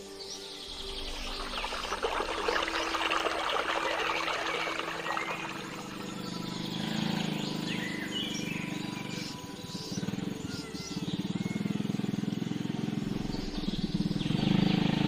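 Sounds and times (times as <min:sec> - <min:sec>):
stream water splashing: 0:00.5 - 0:09.9.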